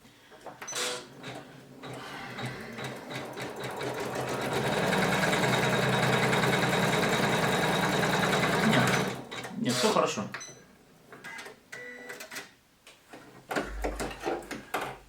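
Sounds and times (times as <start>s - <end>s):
embroidery machine stitching: 0.7s - 10.0s.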